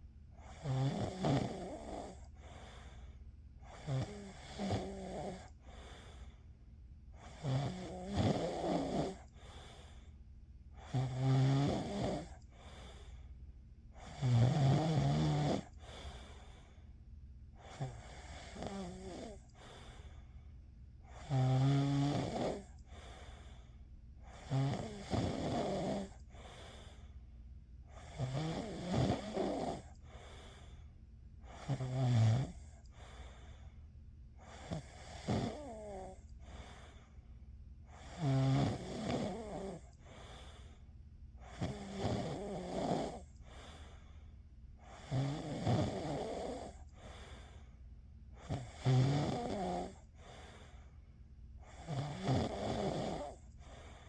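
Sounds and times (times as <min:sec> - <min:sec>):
person snoring: 0:00.4 - 0:03.0, 0:03.6 - 0:06.0, 0:07.2 - 0:09.9, 0:10.8 - 0:13.0, 0:14.0 - 0:16.6, 0:17.6 - 0:20.0, 0:21.1 - 0:23.1, 0:24.2 - 0:26.9, 0:27.9 - 0:30.4, 0:31.5 - 0:33.3, 0:34.4 - 0:36.9, 0:37.9 - 0:40.7, 0:41.4 - 0:43.8, 0:44.9 - 0:47.6, 0:48.4 - 0:50.7, 0:51.6 - 0:54.0.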